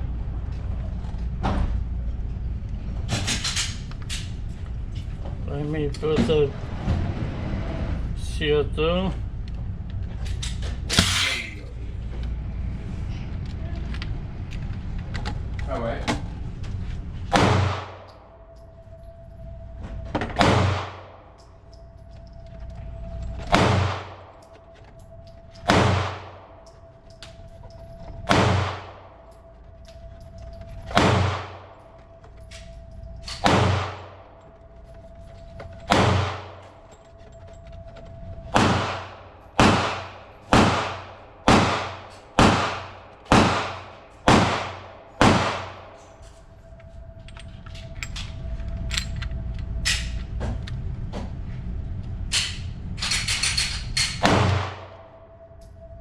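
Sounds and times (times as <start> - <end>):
faint steady hum: 0.0 - 56.0
pistol shots with ringing tail: 17.3 - 18.2, 20.4 - 21.2, 23.5 - 24.3, 25.6 - 26.5, 28.3 - 29.2, 30.9 - 31.7, 33.4 - 34.2, 35.9 - 36.6, 38.5 - 46.0, 54.1 - 55.2.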